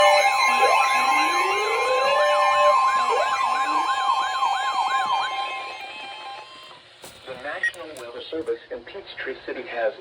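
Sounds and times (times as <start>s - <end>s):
rising siren glide: 0.0s - 6.8s
two-tone alert signal: 0.0s - 6.8s
electronic sirens sweeping: 0.0s - 6.9s.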